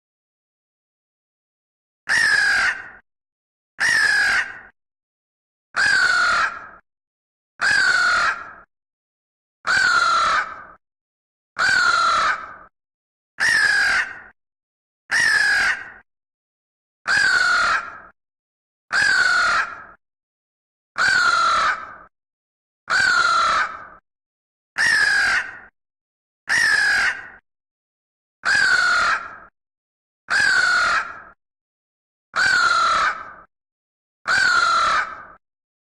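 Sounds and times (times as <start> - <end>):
crow cawing: 2.1 - 3.0, 3.8 - 4.7, 5.8 - 6.8, 7.6 - 8.7, 9.6 - 10.8, 11.6 - 12.7, 13.4 - 14.3, 15.1 - 16.0, 17.1 - 18.1, 18.9 - 20.0, 21.0 - 22.1, 22.9 - 24.0, 24.8 - 25.7, 26.5 - 27.4, 28.4 - 29.5, 30.3 - 31.4, 32.4 - 33.5, 34.2 - 35.4.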